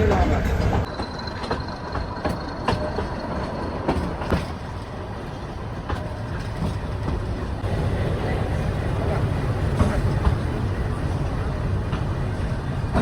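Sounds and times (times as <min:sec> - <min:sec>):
wheels clicking over rail joints: 0:00.0 - 0:07.6
train rumbling: 0:00.0 - 0:13.0.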